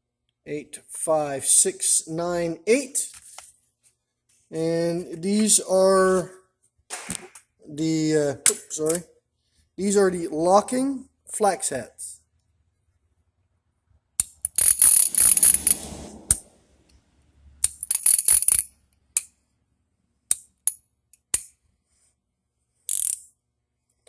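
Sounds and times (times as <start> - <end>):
metal wrenches clinking: 14.2 - 15.9, 17.6 - 18.7.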